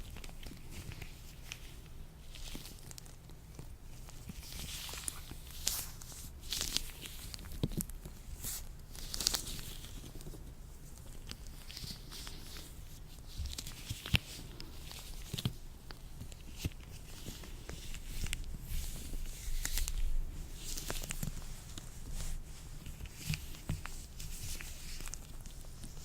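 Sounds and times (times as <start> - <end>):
latex gloves rustling and snapping: 0.0 - 26.0.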